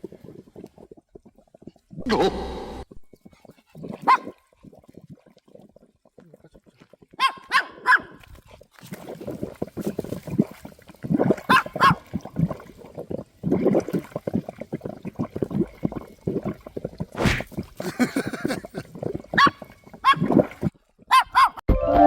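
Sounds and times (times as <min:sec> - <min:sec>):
small dog yipping: 0:19.4 - 0:20.3, 0:21.1 - 0:21.6.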